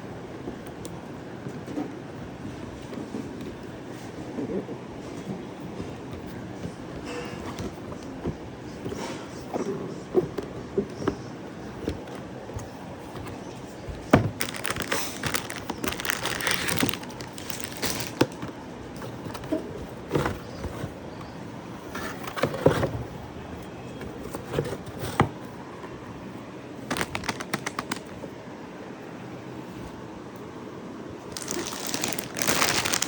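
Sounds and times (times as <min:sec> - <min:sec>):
packaging clicks and knocks: 0:10.4 - 0:21.4, 0:26.9 - 0:28.1, 0:31.3 - 0:33.0
packaging rustling and crinkling: 0:10.4 - 0:23.0, 0:26.9 - 0:28.1, 0:31.3 - 0:33.0.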